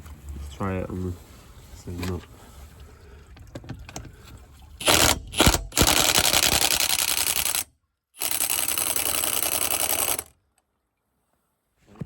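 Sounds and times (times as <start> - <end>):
impact wrench hammering: 4.8 - 7.6, 8.2 - 10.3.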